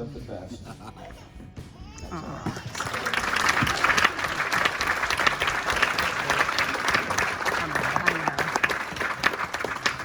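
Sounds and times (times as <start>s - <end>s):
crowd applauding: 2.6s - 10.0s.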